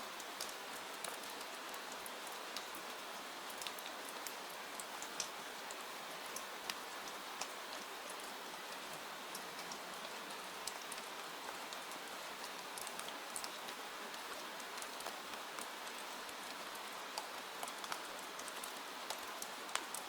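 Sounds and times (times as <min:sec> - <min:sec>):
steady rain hiss: 0:00.0 - 0:20.0
sharp raindrop ticks: 0:00.2 - 0:02.8, 0:03.5 - 0:05.4, 0:07.4 - 0:08.3, 0:09.3 - 0:09.8, 0:11.7 - 0:20.0.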